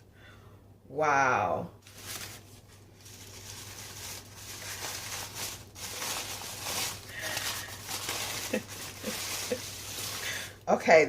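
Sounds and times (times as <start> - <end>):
packaging rustling: 1.8 - 10.6.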